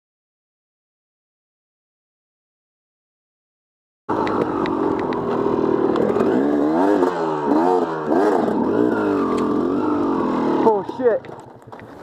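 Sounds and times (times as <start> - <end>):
dirt bike engine revving: 4.1 - 11.7.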